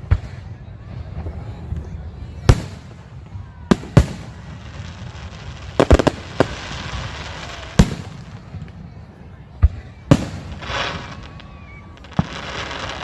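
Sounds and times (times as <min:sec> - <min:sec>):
rapid cluster of firework cracks: 0:03.7 - 0:08.7.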